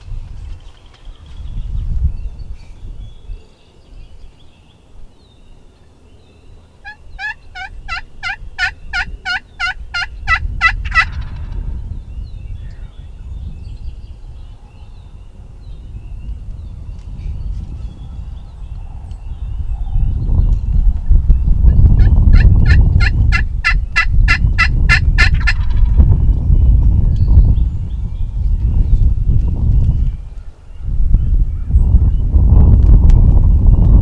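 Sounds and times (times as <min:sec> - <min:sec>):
turkey yelps: 0:06.8 - 0:11.5.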